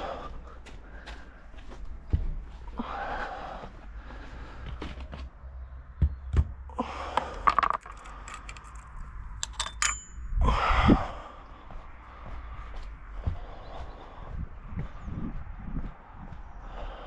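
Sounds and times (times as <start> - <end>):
metal tools clinking: 7.4 - 10.3.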